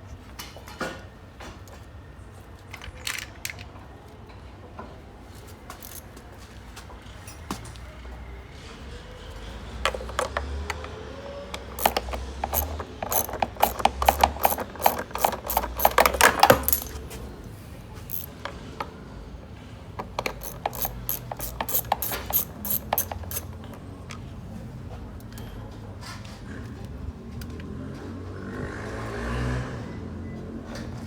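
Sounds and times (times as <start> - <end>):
hand ratchet clicking rapidly: 5.8 - 6.0, 11.6 - 17.0, 18.1 - 18.3, 20.0 - 23.5.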